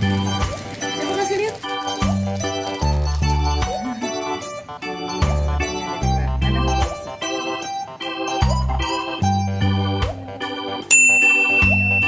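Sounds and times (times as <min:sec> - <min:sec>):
upbeat instrumental music: 0:00.0 - 0:12.0.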